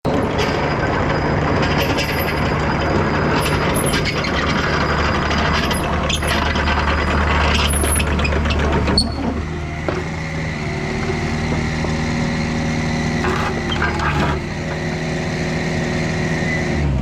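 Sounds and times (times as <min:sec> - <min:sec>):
mechanical clatter: 0:00.1 - 0:15.5
excavator diesel engine drone: 0:00.1 - 0:17.0
high squeaks: 0:03.5 - 0:15.3.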